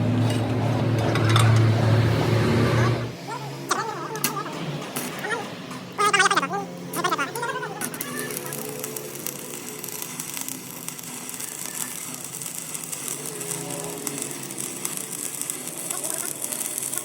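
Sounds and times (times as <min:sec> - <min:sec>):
arc welding crackle: 0:03.7 - 0:17.0.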